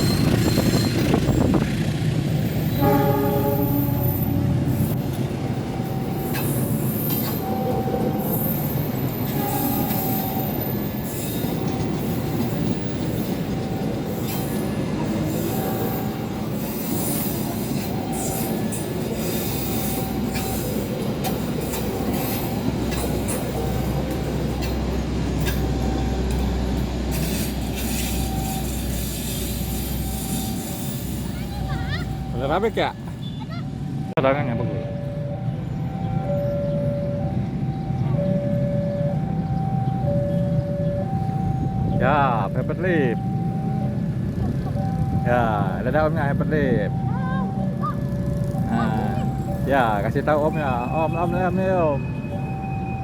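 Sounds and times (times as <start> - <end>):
wheel squeals: 0.0 - 34.0
train rumble and wheel clatter: 0.0 - 53.0.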